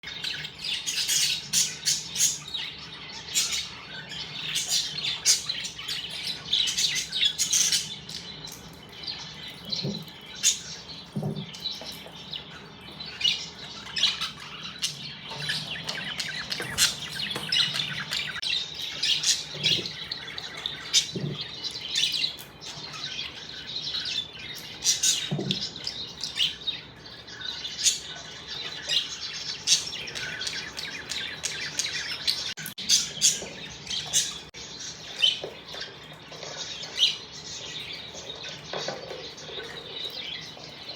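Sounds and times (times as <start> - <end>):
budgerigars chattering: 12.4 - 35.9.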